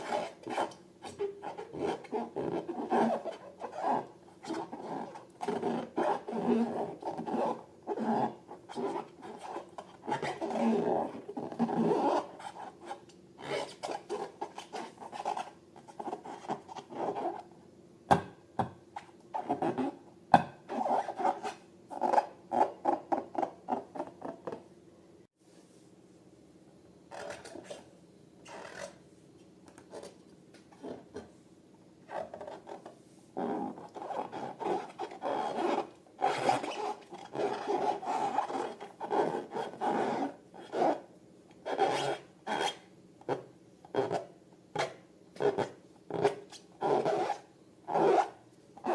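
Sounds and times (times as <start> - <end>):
rubbing and scraping balloons: 0.0 - 17.4, 32.1 - 41.0.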